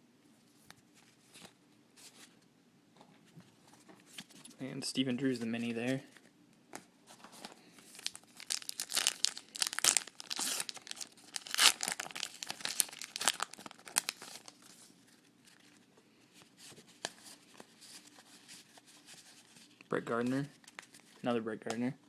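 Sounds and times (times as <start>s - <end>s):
foil wrapper tearing and crinkling: 7.9s - 14.8s.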